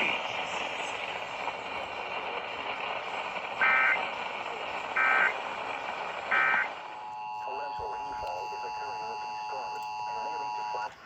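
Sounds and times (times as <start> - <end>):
radio static hiss: 0.0 - 11.0
harsh two-tone digital data tones: 6.3 - 10.9.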